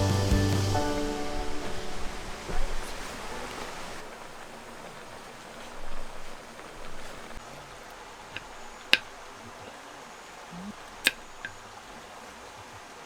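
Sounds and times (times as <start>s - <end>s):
flowing water rushing: 0.0s - 13.0s
faint ticks: 4.1s - 12.7s
sharp clicks: 10.9s - 11.6s.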